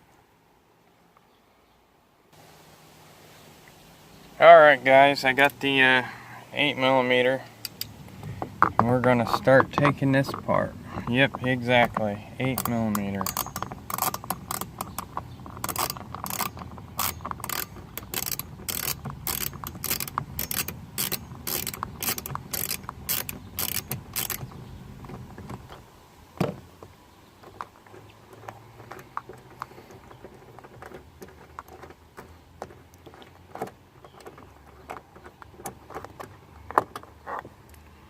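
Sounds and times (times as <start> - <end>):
socket ratchet clicking: 7.6 - 8.0, 11.9 - 24.6.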